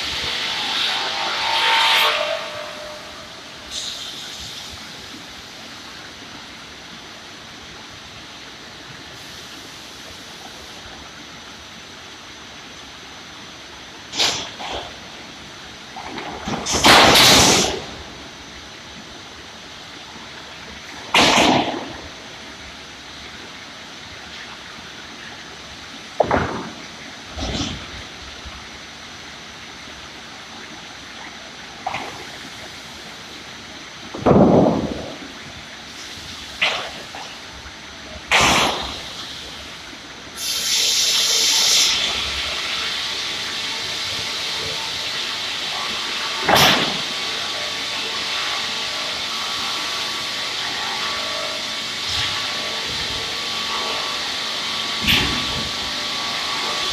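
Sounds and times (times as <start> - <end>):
loud bursts of noise: 0.0 - 6.1, 12.8 - 23.4, 31.8 - 56.9
sawmill machine humming: 0.0 - 30.6, 31.8 - 56.9.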